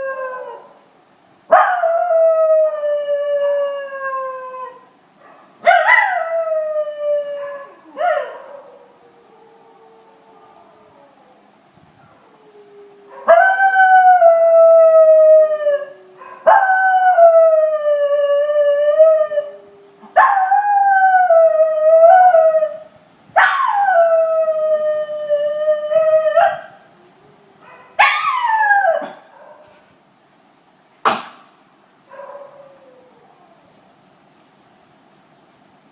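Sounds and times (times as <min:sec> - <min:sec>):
dog howling: 0:12.0 - 0:22.8.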